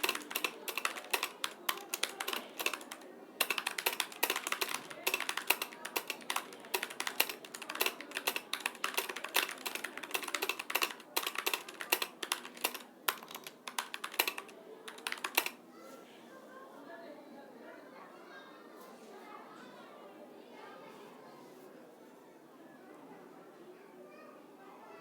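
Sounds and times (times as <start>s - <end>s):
fast typing on keyboard: 0.0s - 15.6s.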